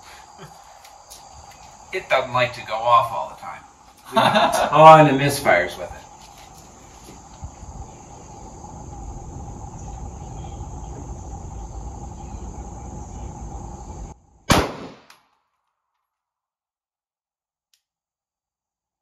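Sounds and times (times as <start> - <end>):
low rumble: 4.6 - 14.7
pistol shot: 14.5 - 15.2.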